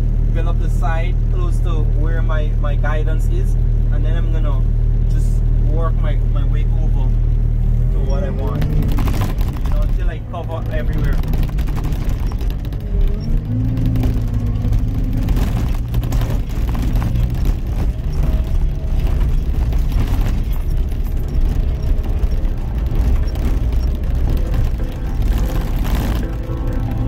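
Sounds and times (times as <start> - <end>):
diesel engine running: 0.0 - 27.0
knocks and clatter: 8.1 - 27.0.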